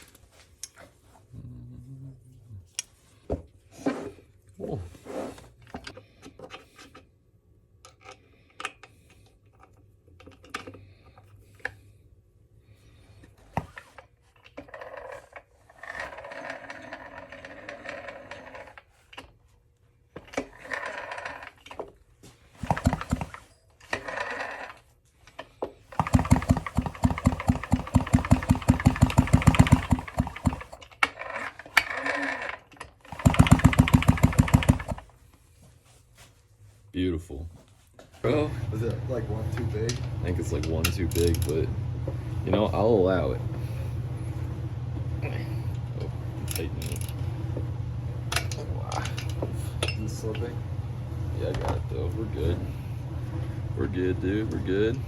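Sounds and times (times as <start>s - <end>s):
impact driver hammering bolt: 22.6s - 23.4s, 26.0s - 30.8s, 33.1s - 35.0s.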